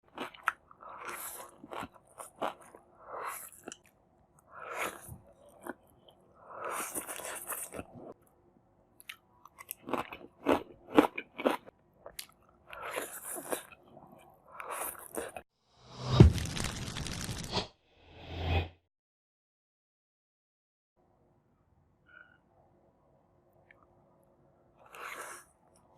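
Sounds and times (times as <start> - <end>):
person chewing food: 0.1 - 8.2, 9.0 - 15.4.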